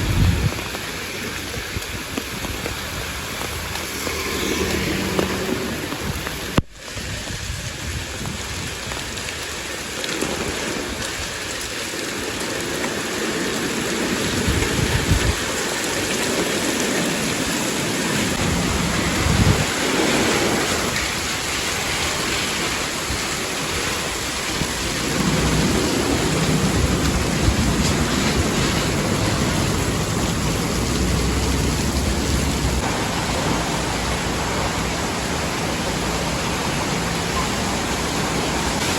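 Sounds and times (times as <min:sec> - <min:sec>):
heavy rain downpour: 0:00.0 - 0:38.9.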